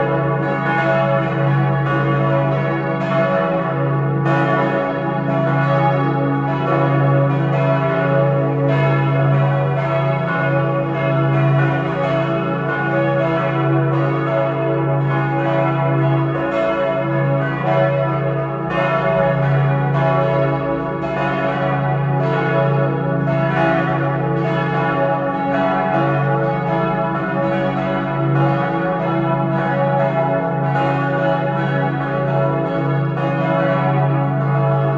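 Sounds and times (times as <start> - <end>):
church bells pealing: 0.0 - 34.9.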